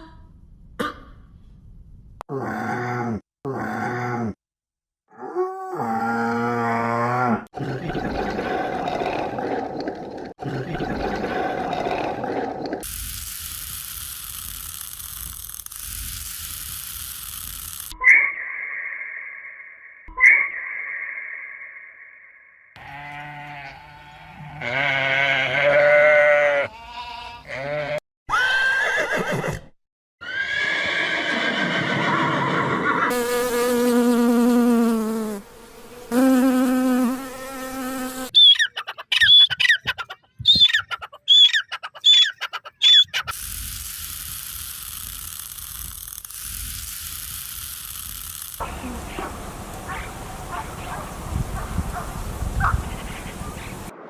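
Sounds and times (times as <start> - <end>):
drawn-out farm animal calls: 38.4 - 43.4.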